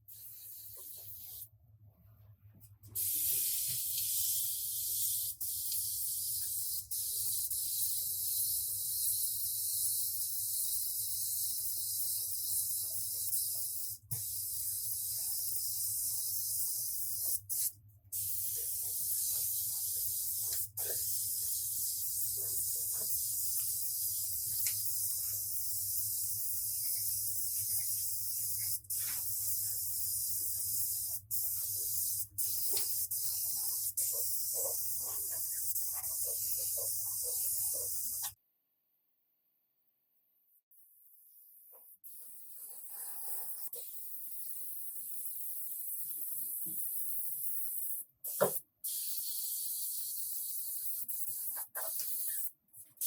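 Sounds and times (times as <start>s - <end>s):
paint spray gun hissing: 3.0s - 38.4s, 48.3s - 52.5s.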